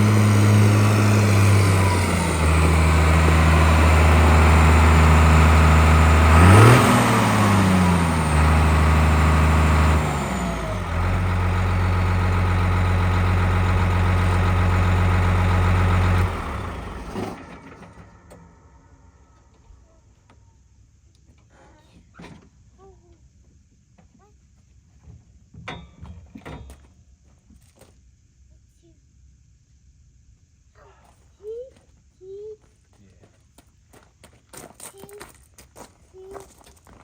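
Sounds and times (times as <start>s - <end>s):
diesel tractor engine running: 0.0s - 19.2s.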